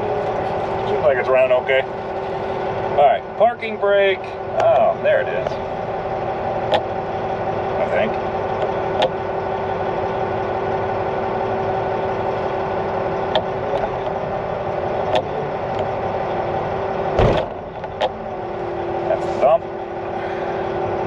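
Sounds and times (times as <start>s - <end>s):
diesel engine idling: 0.0s - 21.0s
loud thump: 17.2s - 18.1s.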